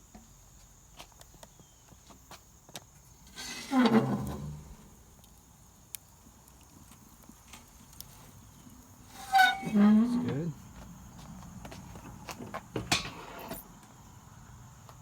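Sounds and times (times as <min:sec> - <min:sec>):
lid hinge creaking: 0:03.3 - 0:04.8, 0:09.1 - 0:10.5.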